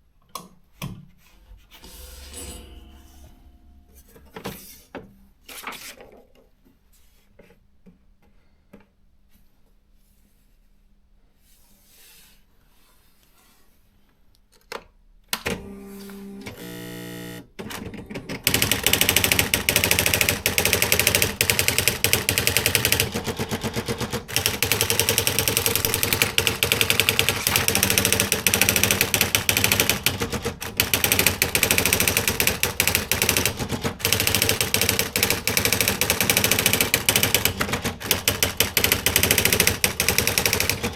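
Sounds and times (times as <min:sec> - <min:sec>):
typewriter carriage whirring: 0:15.5 - 0:40.9
typewriter clicks: 0:17.7 - 0:40.9
typewriter printing rattle: 0:17.7 - 0:40.9.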